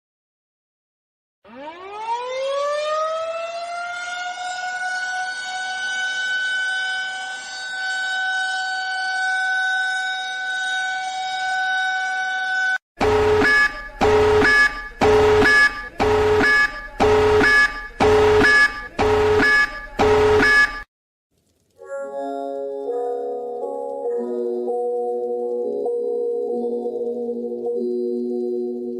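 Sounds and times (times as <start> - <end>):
siren tone: 1.4 - 20.9
harsh pulsing alarm horn: 3.0 - 20.8.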